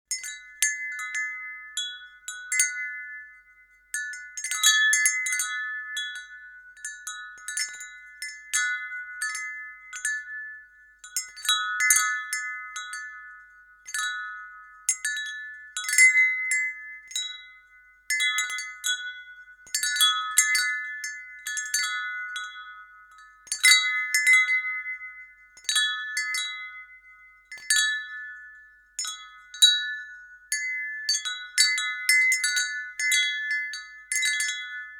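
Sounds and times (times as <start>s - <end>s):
wind chime ringing: 0.1s - 34.9s.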